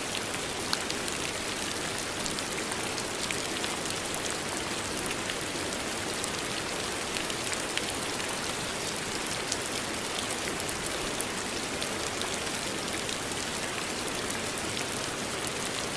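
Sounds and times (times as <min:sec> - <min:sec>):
steady rain falling: 0:00.0 - 0:15.9.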